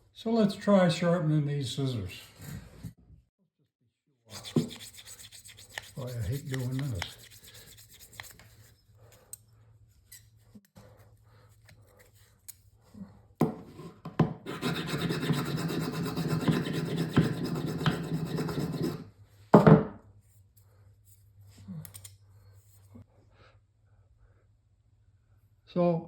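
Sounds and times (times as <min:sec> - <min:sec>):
steel scraping against an edge: 0:14.5 - 0:19.1.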